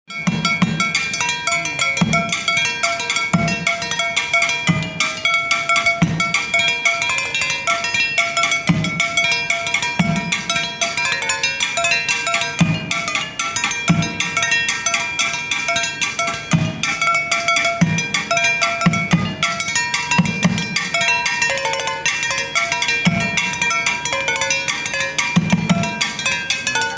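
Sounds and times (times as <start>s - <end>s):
drums and percussion: 0.1s - 26.9s
ringing metallic tones: 0.1s - 26.9s
bass drum beating: 18.8s - 20.9s.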